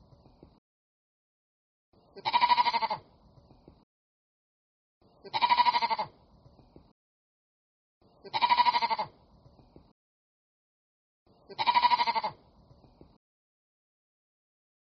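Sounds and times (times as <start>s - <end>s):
animal bleating: 2.2s - 3.1s, 5.2s - 6.2s, 8.2s - 9.2s, 11.5s - 12.4s.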